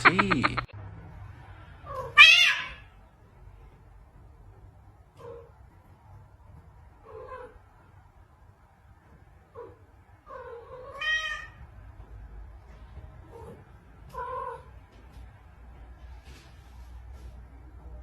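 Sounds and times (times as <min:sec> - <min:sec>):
cat meowing: 0:01.9 - 0:02.9, 0:10.3 - 0:11.6.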